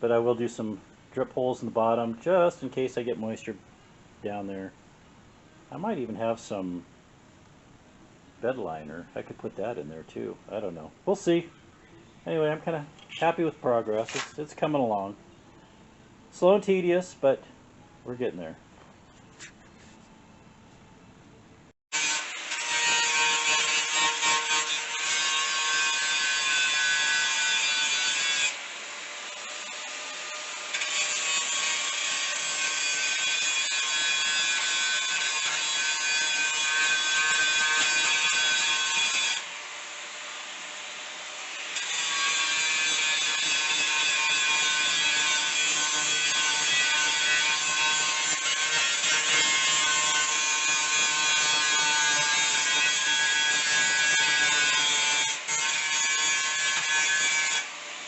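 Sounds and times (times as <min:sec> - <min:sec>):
angle grinder grinding metal: 0:21.9 - 0:57.8.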